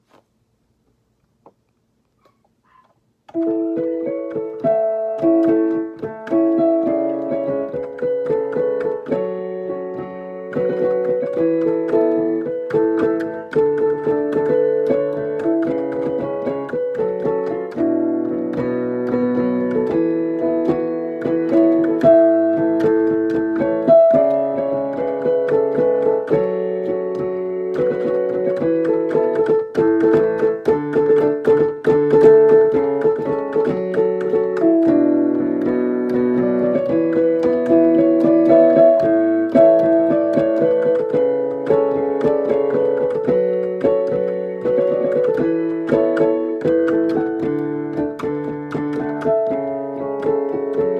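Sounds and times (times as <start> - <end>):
piano chords and melody: 3.3 - 50.9.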